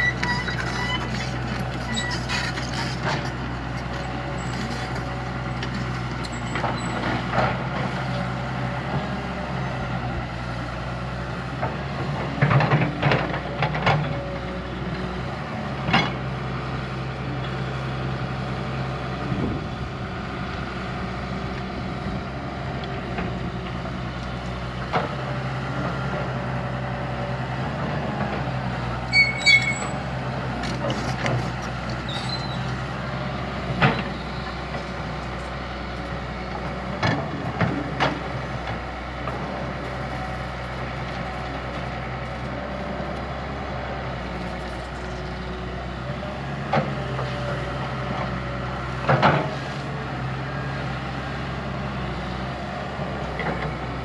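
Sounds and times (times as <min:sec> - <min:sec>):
short high squeak: 0:00.0 - 0:02.8, 0:29.1 - 0:30.0, 0:32.1 - 0:32.7
heavy diesel machine running: 0:00.0 - 0:54.0.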